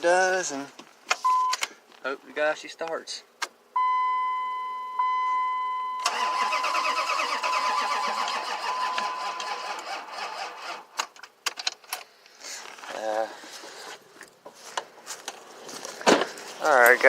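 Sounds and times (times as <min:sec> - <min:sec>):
starter motor cranking: 0:06.0 - 0:10.9.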